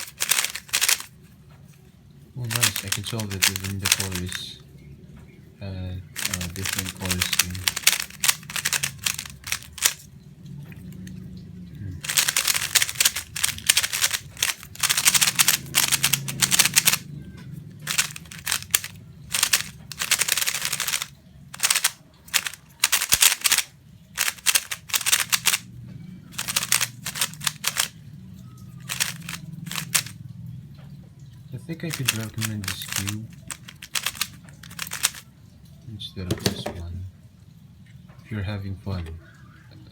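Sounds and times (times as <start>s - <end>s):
puzzle cube clicking turns: 0.0s - 1.2s, 2.4s - 4.5s, 6.1s - 10.1s, 12.0s - 17.1s, 17.8s - 25.7s, 26.3s - 28.0s, 28.7s - 30.2s, 31.9s - 35.2s.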